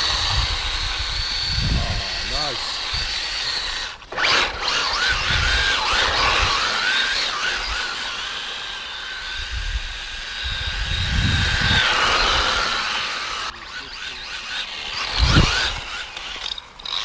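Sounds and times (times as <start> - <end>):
low rumbles: 0.0 - 7.2
rc car motor whining: 0.0 - 17.0.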